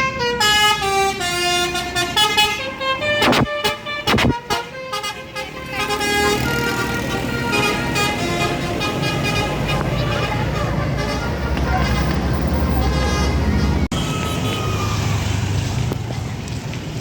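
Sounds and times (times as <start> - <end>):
musical bus horn tune: 0.0 - 12.1
traffic noise: 0.0 - 17.0
short harsh horn bursts: 3.1 - 5.2.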